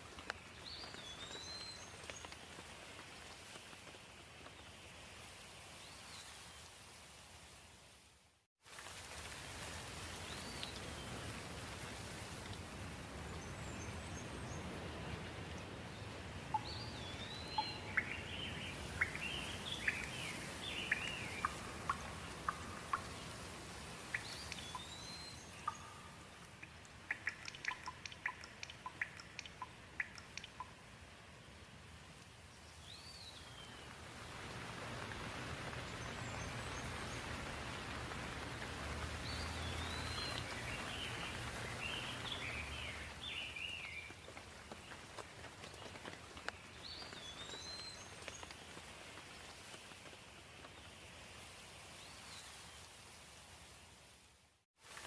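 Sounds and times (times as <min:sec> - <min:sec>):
rain hiss: 0:00.0 - 0:55.0
sharp water drips: 0:08.7 - 0:31.1, 0:32.2 - 0:50.2
birds chirping: 0:16.0 - 0:30.8.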